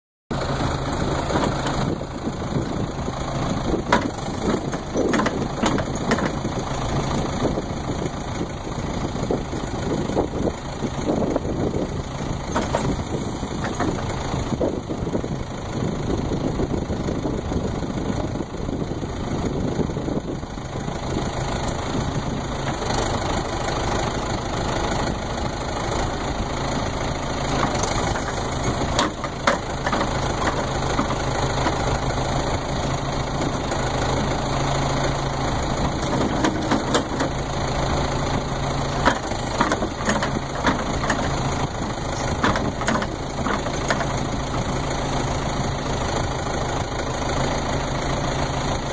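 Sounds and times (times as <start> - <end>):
backhoe engine running: 0.3 - 48.9
knocks and clanks: 3.9 - 6.5, 12.5 - 13.0, 27.6 - 31.8, 36.0 - 37.4, 39.0 - 41.4, 42.2 - 44.2.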